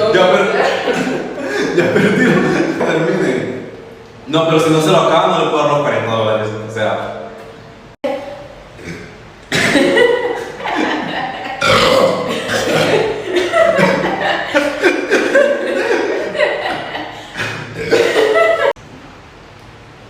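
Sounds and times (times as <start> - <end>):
man burping loudly: 8.7 - 9.8, 11.6 - 13.2, 17.4 - 18.1.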